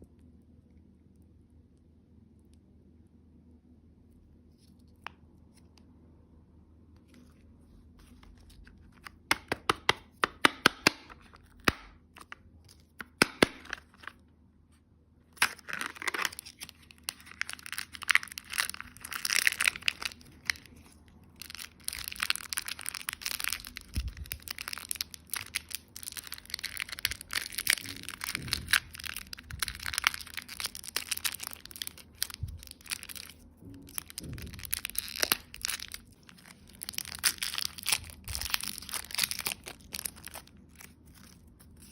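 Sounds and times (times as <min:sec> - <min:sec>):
packaging cracks and clicks: 0:08.4 - 0:14.2, 0:15.4 - 0:41.9
wrappers tearing and crinkling: 0:15.4 - 0:41.9.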